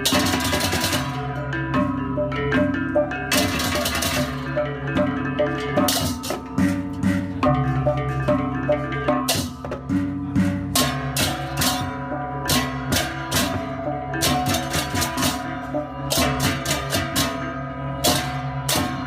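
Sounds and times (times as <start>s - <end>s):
drums: 0.0s - 19.0s
ringing tuned metal percussion: 0.0s - 19.0s.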